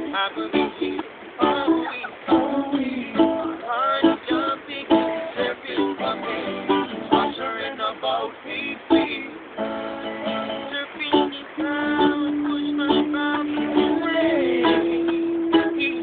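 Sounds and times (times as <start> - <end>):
guitar strumming: 0.0 - 7.9, 8.5 - 16.0
ukulele strumming: 0.0 - 16.0
person singing long note: 11.3 - 16.0.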